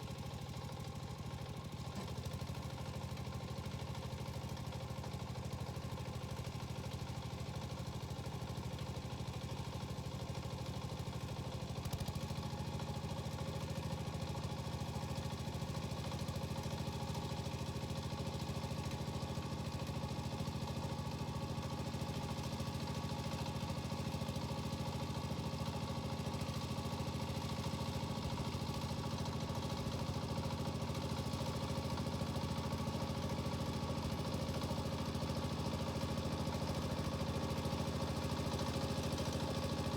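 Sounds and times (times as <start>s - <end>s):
tiller diesel engine running: 0.1s - 39.9s.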